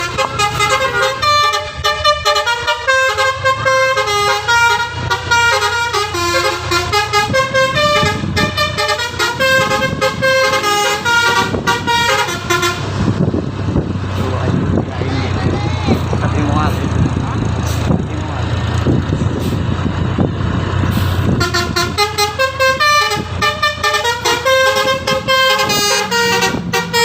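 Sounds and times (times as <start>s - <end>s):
multi-tone air horn melody: 0.0s - 12.9s, 21.4s - 27.0s
bus engine running: 0.0s - 27.0s.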